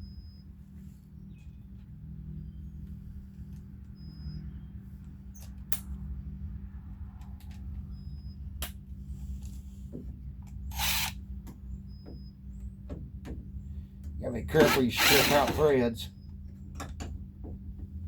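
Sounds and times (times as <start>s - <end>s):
loud rasping burst: 10.7s - 11.2s, 14.5s - 15.9s
power drill motor hum: 10.7s - 11.2s, 14.5s - 15.9s.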